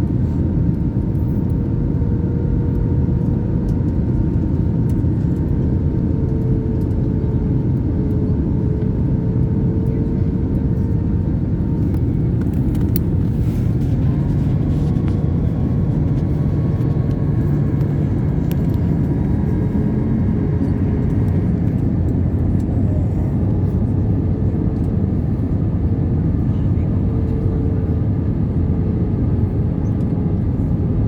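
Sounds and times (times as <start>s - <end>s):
airliner engine rumble: 0.0s - 31.0s.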